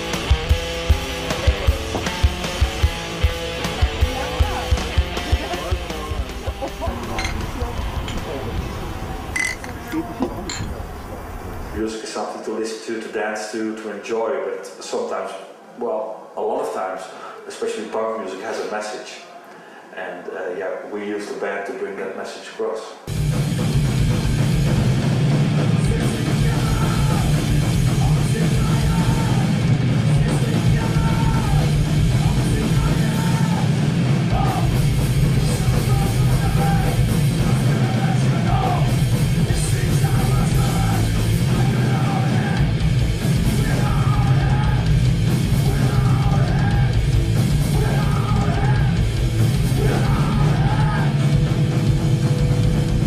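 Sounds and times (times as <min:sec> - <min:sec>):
punk rock band playing: 0:00.0 - 0:08.5, 0:23.1 - 0:53.0
drums: 0:00.0 - 0:11.7, 0:23.1 - 0:53.0
shouted vocals: 0:25.9 - 0:51.4.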